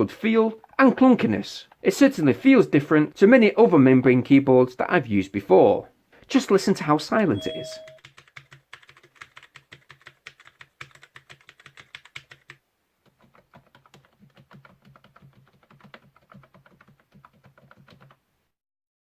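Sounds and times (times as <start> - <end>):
fast typing on soft keyboard: 7.4 - 18.2.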